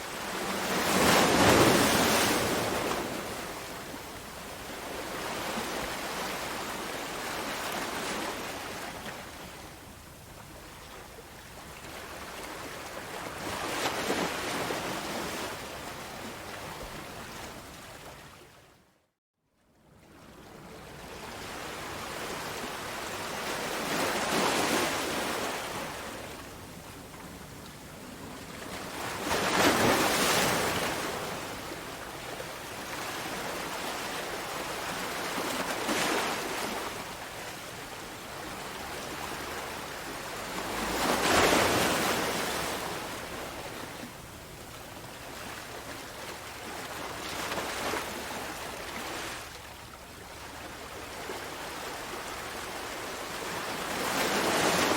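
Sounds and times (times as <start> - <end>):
ocean waves breaking: 0.2 - 3.8, 28.7 - 49.8, 50.4 - 54.9.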